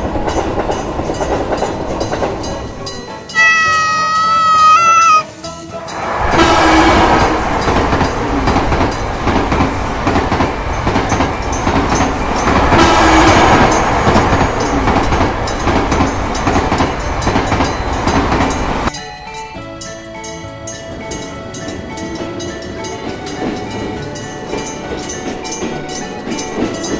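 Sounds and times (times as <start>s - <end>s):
train wheels clattering: 0.0s - 18.9s, 20.8s - 26.9s
train horn tone: 3.3s - 5.3s, 12.7s - 14.2s.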